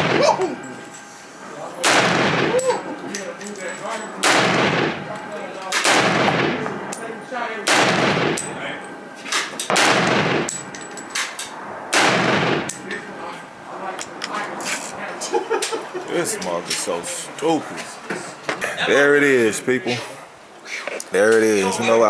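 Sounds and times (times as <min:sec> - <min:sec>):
gunshots with long echo: 0:00.0 - 0:00.6, 0:01.8 - 0:03.0, 0:04.2 - 0:13.2.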